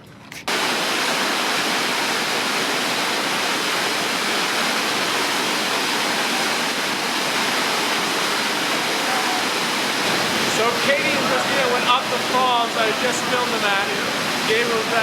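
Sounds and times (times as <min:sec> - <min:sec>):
waterfall pouring: 0:00.0 - 0:15.0.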